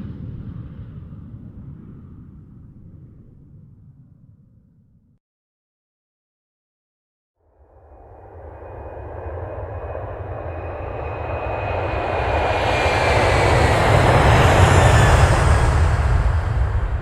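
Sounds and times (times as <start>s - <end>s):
jet aircraft roar: 7.7s - 17.0s
thin jet whine: 7.7s - 17.0s.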